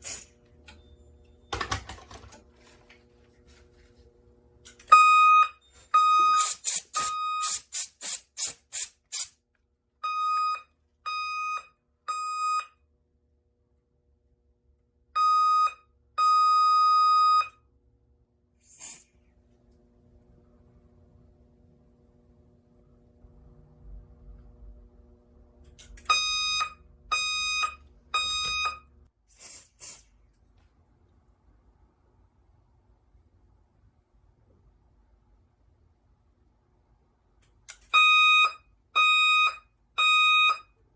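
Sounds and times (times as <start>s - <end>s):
fire alarm beeps: 4.9s - 7.6s, 10.0s - 12.8s, 15.2s - 17.6s, 26.0s - 28.9s, 37.9s - 40.8s
short bursts of hiss: 6.4s - 9.3s, 18.6s - 19.2s, 29.3s - 30.1s
fire alarm horn blasts: 26.0s - 28.8s, 37.9s - 40.8s.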